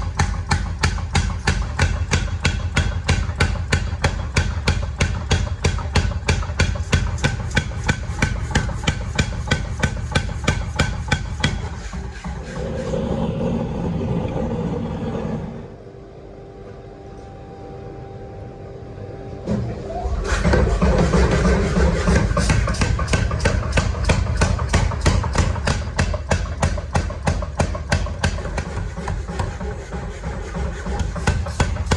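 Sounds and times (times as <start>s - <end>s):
hammer striking steel: 0.0s - 12.4s, 20.3s - 31.9s
steady low hum: 0.0s - 31.9s
low rumble: 12.3s - 16.2s.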